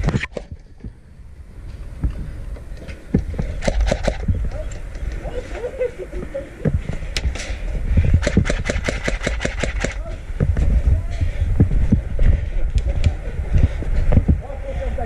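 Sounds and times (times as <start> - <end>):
airsoft gun firing: 3.6 - 4.2, 8.2 - 10.0.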